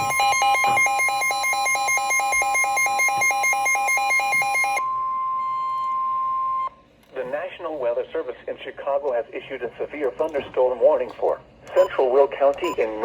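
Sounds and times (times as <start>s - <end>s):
pulsing beep: 0.0s - 6.7s.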